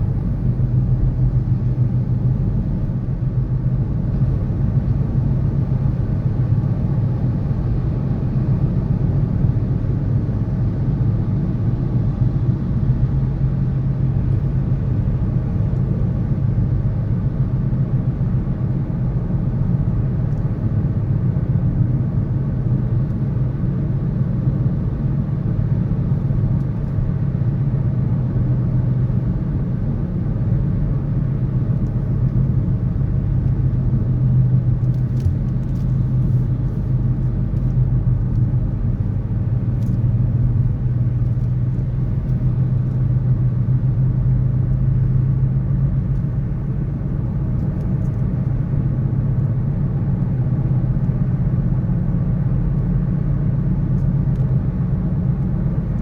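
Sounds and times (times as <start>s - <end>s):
city road traffic rumble: 0.0s - 56.0s.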